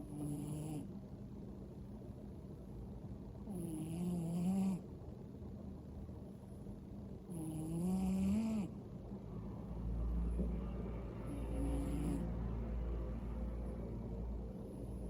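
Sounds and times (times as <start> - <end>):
cat snoring: 0.0 - 0.9, 3.5 - 4.8, 7.3 - 8.8, 11.3 - 12.3
low rumble: 8.9 - 15.0.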